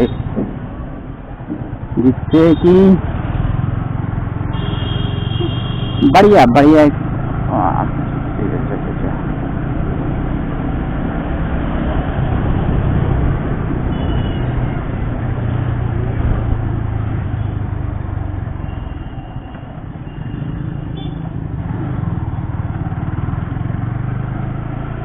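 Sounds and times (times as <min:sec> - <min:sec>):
motorcycle engine running: 0:20.5 - 0:25.0.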